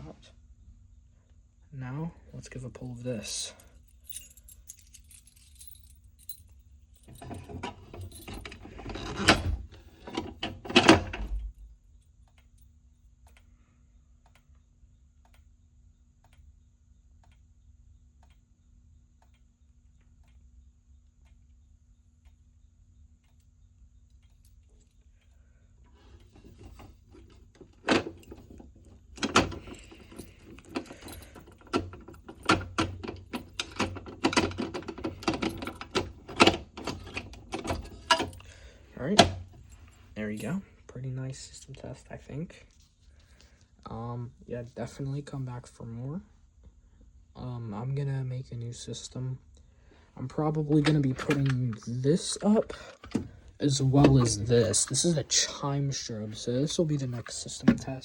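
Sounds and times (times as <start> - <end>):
faint low hum: 0.0 - 58.0
sharp clicks and rattling: 4.1 - 11.6, 26.1 - 38.5, 50.6 - 52.0
fire alarm pull station clicks: 7.1 - 11.6, 26.2 - 38.5, 50.7 - 51.8.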